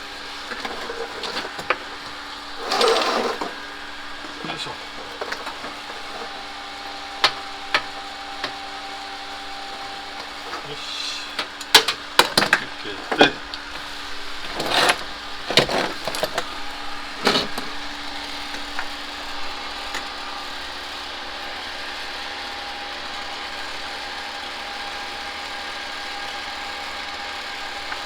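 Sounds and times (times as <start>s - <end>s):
vacuum pump running: 0.0s - 28.0s
handling knocks and clatters: 4.2s - 6.4s, 11.4s - 17.8s.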